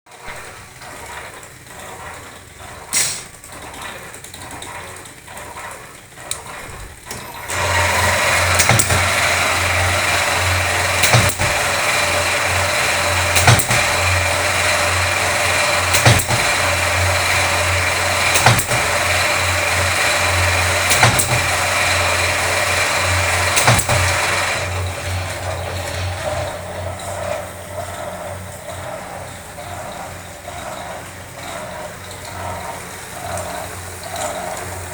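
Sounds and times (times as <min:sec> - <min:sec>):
machine humming: 0:00.3 - 0:34.9
sharp machine stamp stroke: 0:02.9 - 0:03.4, 0:06.3 - 0:27.5.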